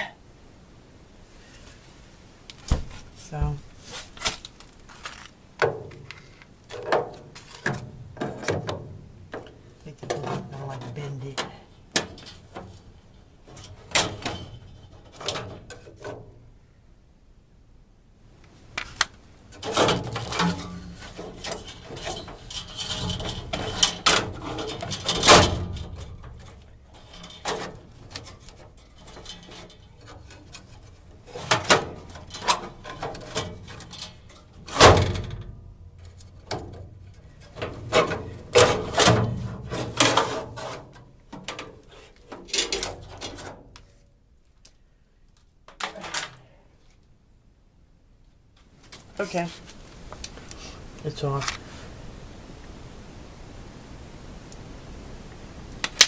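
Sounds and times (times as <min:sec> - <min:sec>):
furnace filter scraping and rustling: 0:02.6 - 0:05.4, 0:19.5 - 0:44.0.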